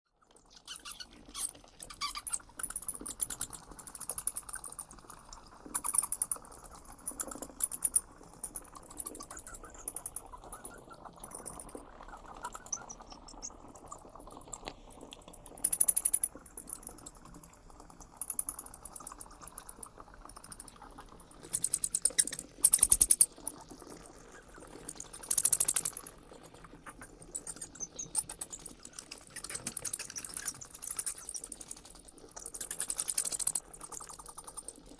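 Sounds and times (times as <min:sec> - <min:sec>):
bats chittering: 0:00.4 - 0:02.4, 0:24.7 - 0:31.6.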